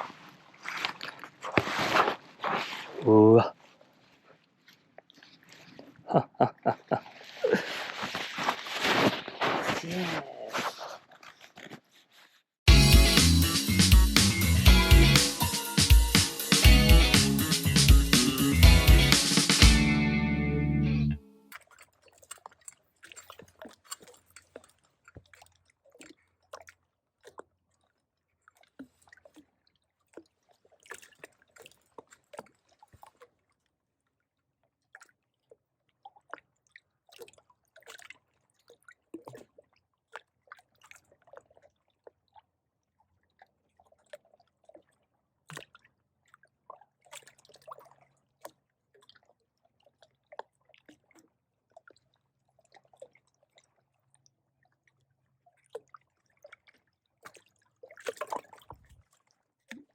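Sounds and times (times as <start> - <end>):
light water splashes and drips: 3.6 - 8.8, 21.5 - 59.9.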